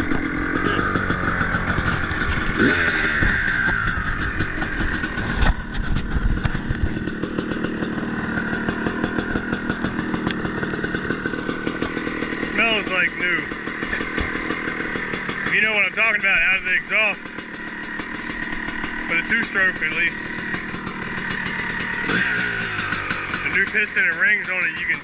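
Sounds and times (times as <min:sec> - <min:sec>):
sharp engine knock: 0:00.0 - 0:12.4, 0:13.5 - 0:15.5
two-stroke engine running: 0:00.0 - 0:25.0.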